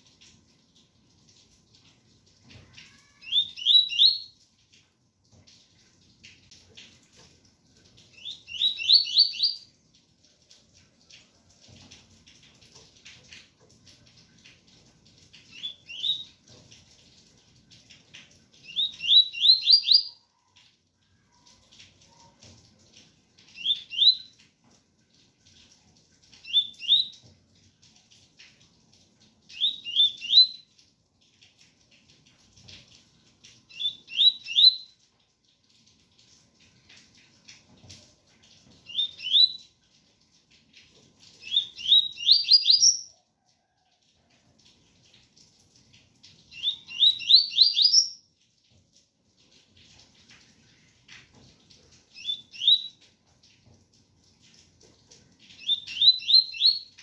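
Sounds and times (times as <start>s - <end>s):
faint rain pattering: 0.0s - 57.0s
bird singing whistled notes: 3.2s - 4.3s, 8.2s - 9.6s, 15.6s - 16.3s, 18.7s - 20.2s, 23.6s - 24.3s, 29.6s - 30.6s, 33.7s - 34.9s, 38.9s - 39.6s, 41.4s - 43.1s, 46.6s - 48.2s, 52.2s - 53.0s, 55.6s - 56.9s.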